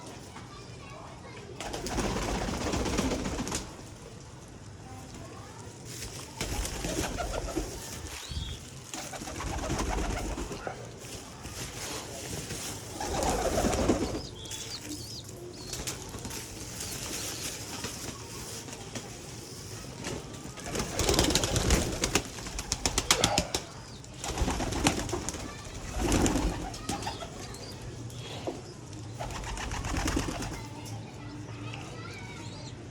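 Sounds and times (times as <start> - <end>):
pigeons cooing: 20.8 - 24.9.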